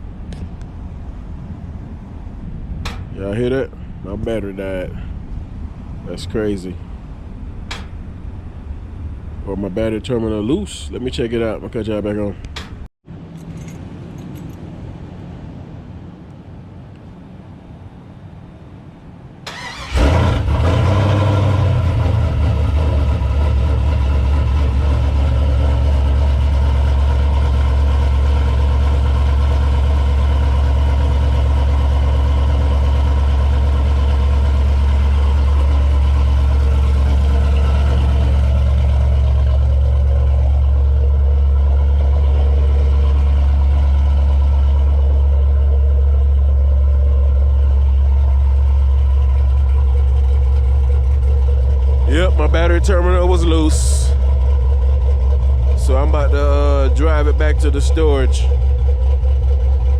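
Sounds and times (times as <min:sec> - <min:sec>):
engine cranking and idling: 0:02.7 - 0:03.6, 0:07.2 - 0:09.1, 0:19.4 - 0:59.9.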